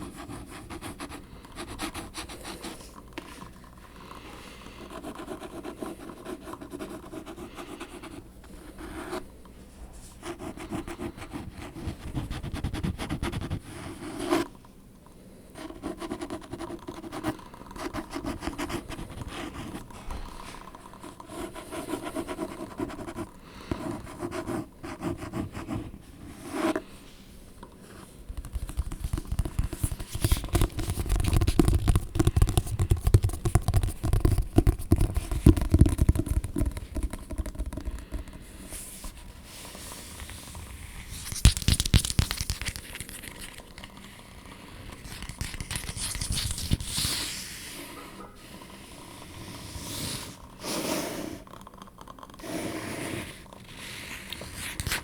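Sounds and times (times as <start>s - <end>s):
scratching and tapping on microphone: 15.8s - 21.6s, 28.3s - 39.2s, 41.0s - 44.1s, 44.9s - 47.3s, 54.3s - 55.0s.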